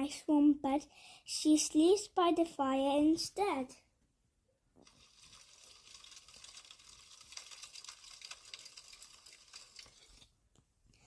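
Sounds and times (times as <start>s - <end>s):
fire crackling: 4.8s - 10.4s.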